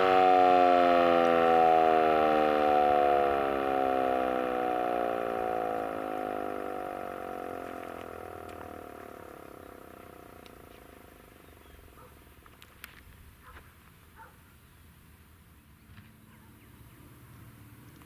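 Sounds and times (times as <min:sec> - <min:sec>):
fire siren winding down: 0:00.0 - 0:10.9
faint ticks: 0:06.8 - 0:11.0.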